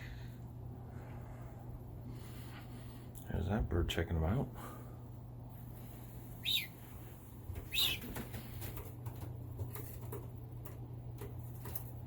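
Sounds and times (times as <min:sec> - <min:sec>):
steady low hum: 0:00.0 - 0:12.0
pigeons stirring in loft: 0:06.4 - 0:12.0.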